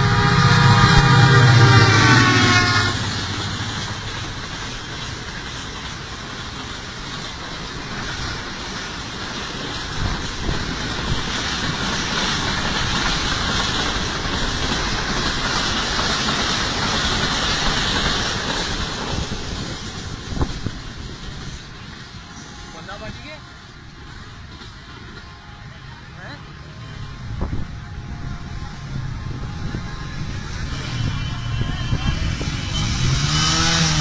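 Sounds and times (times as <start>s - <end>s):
train horn: 0.0s - 3.5s, 28.4s - 34.0s
train wheels on rails: 0.0s - 34.0s.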